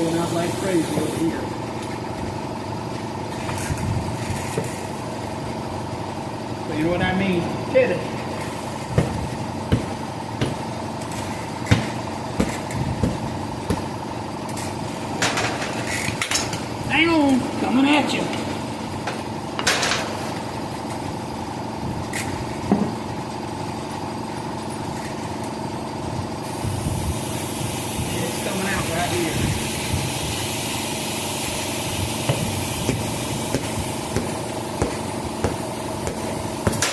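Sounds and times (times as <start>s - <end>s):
air compressor hum: 0.0s - 36.9s
hammer striking a tire: 8.9s - 10.8s, 11.6s - 13.9s, 32.2s - 36.9s.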